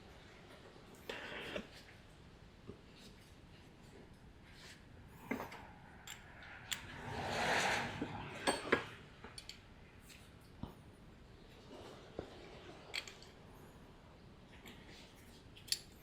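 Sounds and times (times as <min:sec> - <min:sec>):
small parts clicking and tapping: 0:05.2 - 0:06.9, 0:09.2 - 0:10.6, 0:12.9 - 0:13.4, 0:15.5 - 0:16.0.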